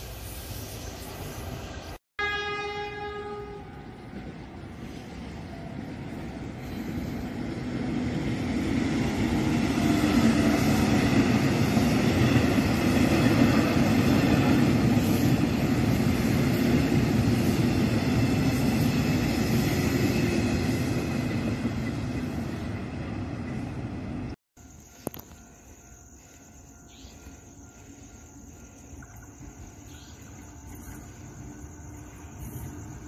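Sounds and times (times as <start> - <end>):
electric train passing: 0.0 - 33.0.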